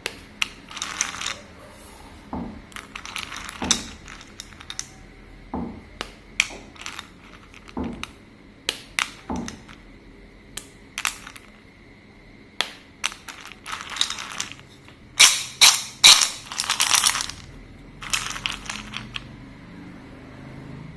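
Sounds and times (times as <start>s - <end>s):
slate pencils snapping: 15.2s - 17.4s.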